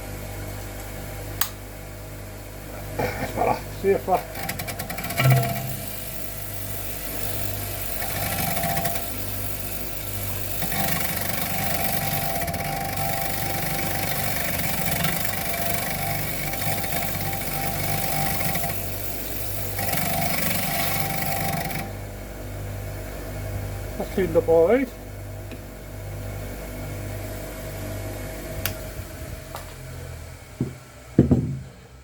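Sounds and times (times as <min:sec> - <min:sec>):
bench grinder motor hum: 0:03.8 - 0:22.0, 0:27.6 - 0:31.7
metal grinding hiss: 0:05.2 - 0:12.2.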